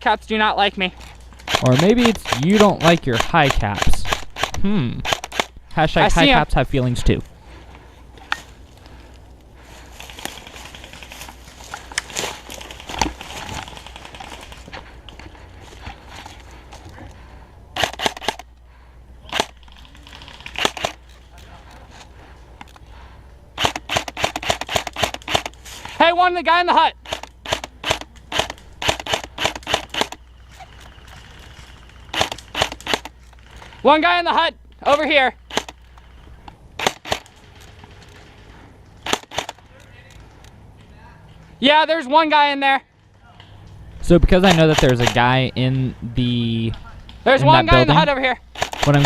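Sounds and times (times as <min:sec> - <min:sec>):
airsoft rifle shots: 0:01.4 - 0:06.4, 0:17.8 - 0:18.5, 0:19.2 - 0:19.7, 0:20.4 - 0:21.0, 0:23.6 - 0:25.6, 0:27.0 - 0:30.2, 0:32.1 - 0:33.2, 0:35.4 - 0:35.8, 0:36.8 - 0:37.4, 0:39.0 - 0:39.7, 0:44.2 - 0:45.5, 0:47.7 - 0:49.0
twigs snapping: 0:08.2 - 0:17.0
footsteps crunching dry leaves: 0:09.6 - 0:16.6.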